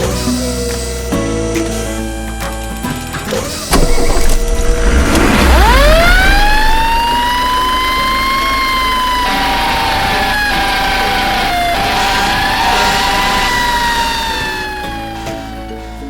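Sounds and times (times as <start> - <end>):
fire truck siren wailing: 0.0 - 16.0
low rumble: 3.7 - 8.2.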